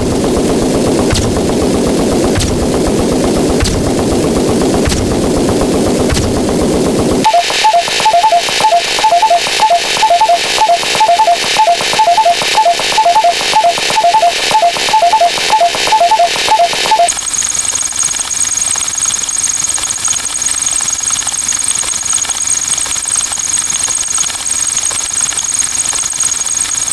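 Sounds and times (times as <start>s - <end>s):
pulsing static hiss: 0.0s - 18.3s
rapid two-note electronic beeping: 0.2s - 26.9s.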